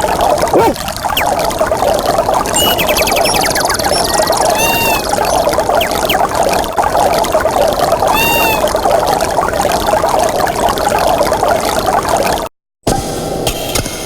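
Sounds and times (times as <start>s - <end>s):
ringtone with rushing water sound: 0.0s - 12.5s
short arched chirp: 2.6s - 6.3s.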